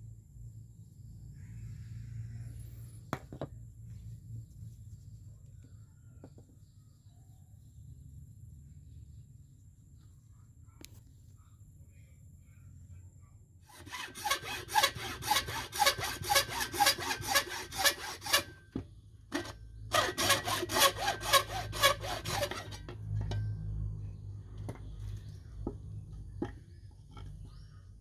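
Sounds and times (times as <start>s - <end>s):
hand tool scraping: 13.7s - 18.7s, 19.3s - 23.6s.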